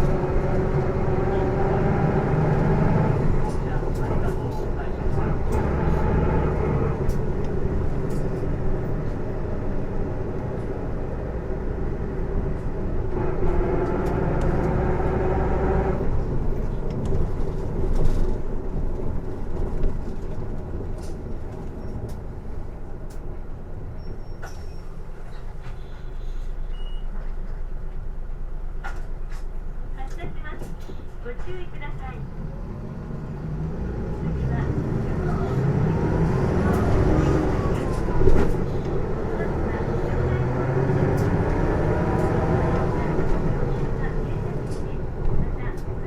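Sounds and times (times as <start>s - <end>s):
loud drivetrain noise: 0.0s - 21.7s, 32.4s - 46.0s
bus diesel engine: 0.0s - 46.0s.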